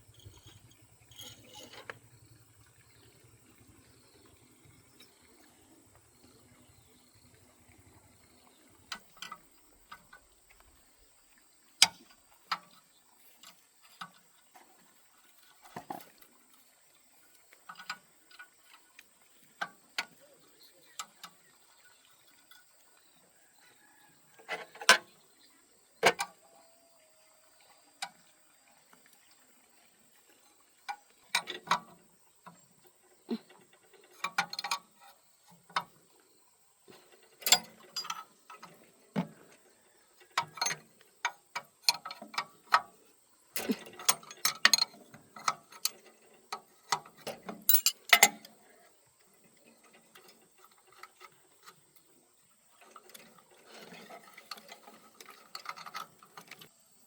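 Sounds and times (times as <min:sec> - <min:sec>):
metal tools clinking and knocking: 0:00.1 - 0:02.0, 0:37.2 - 0:38.7, 0:40.4 - 0:40.8, 0:43.6 - 0:46.3, 0:47.0 - 0:48.5.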